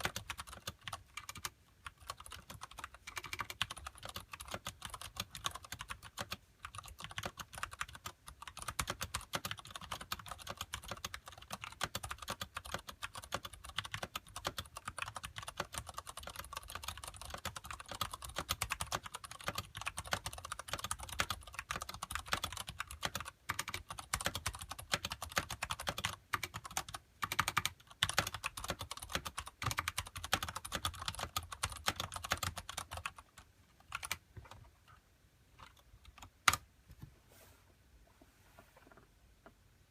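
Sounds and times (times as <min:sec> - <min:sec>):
mechanical keyboard typing: 0:00.0 - 0:35.0, 0:35.6 - 0:36.7.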